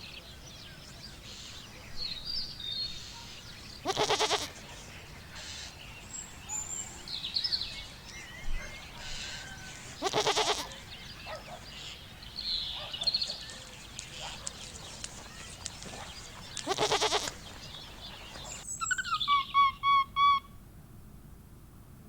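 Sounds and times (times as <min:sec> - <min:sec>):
goat bleating: 0:03.8 - 0:04.6, 0:10.0 - 0:10.7, 0:16.5 - 0:17.5.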